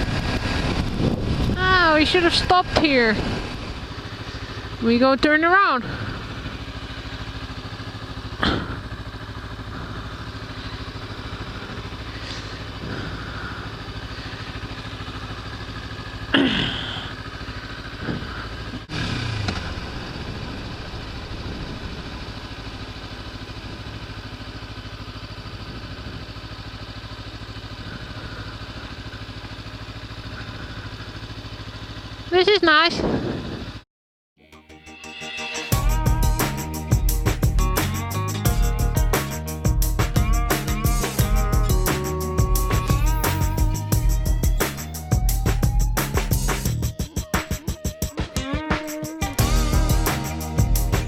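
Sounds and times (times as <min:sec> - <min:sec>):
motorcycle engine running: 0:00.0 - 0:33.8, 0:34.6 - 0:51.0.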